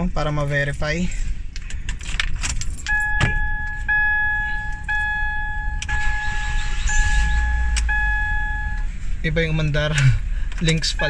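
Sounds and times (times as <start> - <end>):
dashboard warning chime dinging: 2.7 - 9.8.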